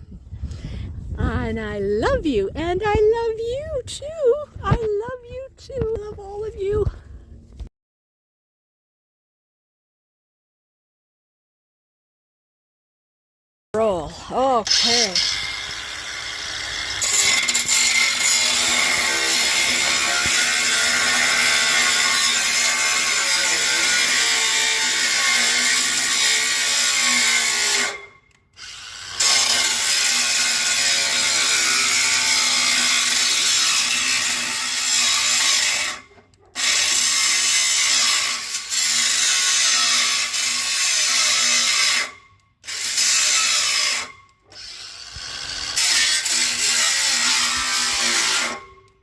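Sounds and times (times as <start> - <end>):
power saw cutting metal: 14.6 - 49.0.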